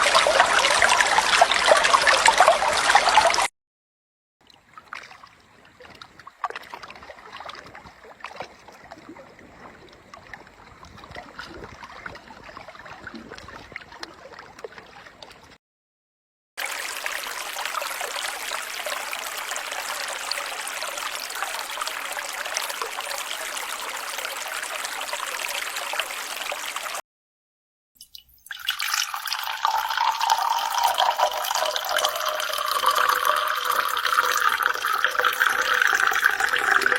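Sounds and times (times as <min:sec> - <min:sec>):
running water rushing: 0:00.0 - 0:03.5, 0:16.6 - 0:27.0, 0:28.5 - 0:36.9
water pouring into container: 0:00.0 - 0:03.5, 0:16.6 - 0:27.0, 0:28.0 - 0:36.9.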